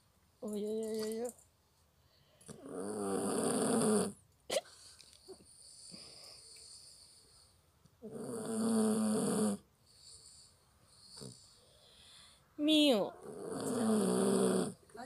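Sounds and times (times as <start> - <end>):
puppy snoring: 2.4 - 4.2, 8.0 - 12.2, 13.0 - 14.9.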